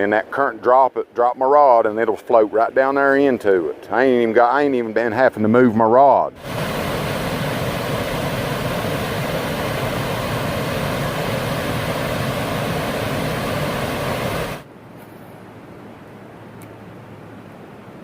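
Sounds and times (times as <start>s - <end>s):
creek water running over rocks: 6.4s - 14.6s.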